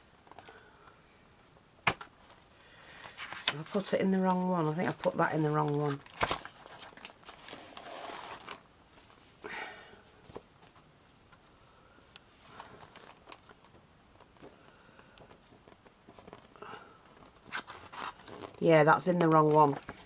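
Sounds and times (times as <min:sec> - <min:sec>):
paper rustling and crinkling: 0:01.9 - 0:09.4, 0:12.4 - 0:20.0.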